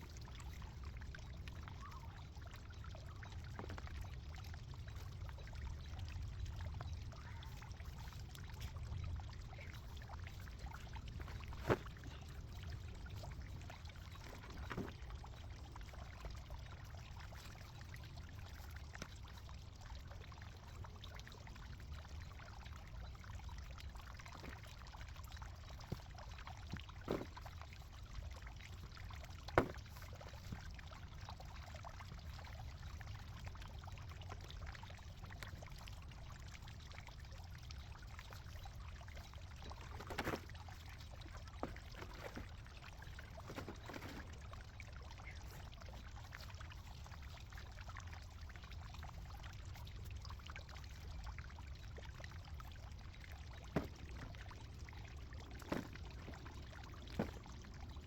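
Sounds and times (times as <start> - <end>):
loose dirt shifting: 10.5 - 15.3, 27.0 - 27.4, 29.5 - 30.1, 39.6 - 44.5, 53.7 - 58.0.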